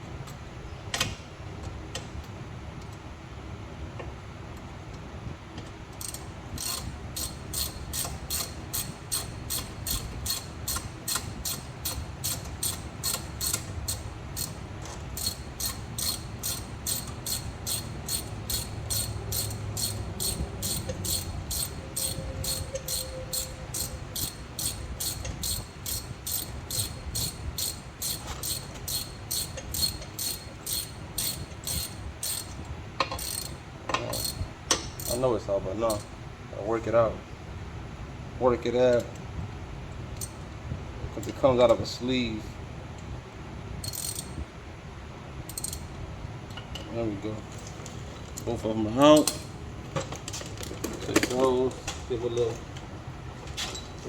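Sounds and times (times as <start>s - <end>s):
hand ratchet clicking: 6.0s - 14.6s, 15.2s - 35.3s, 43.8s - 44.3s, 45.5s - 45.8s.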